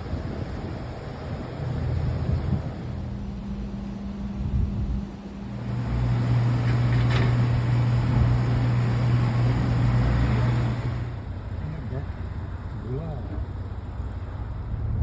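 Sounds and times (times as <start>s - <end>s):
wind noise: 0.0s - 3.1s, 4.3s - 5.2s
vehicle engine humming: 0.0s - 15.0s.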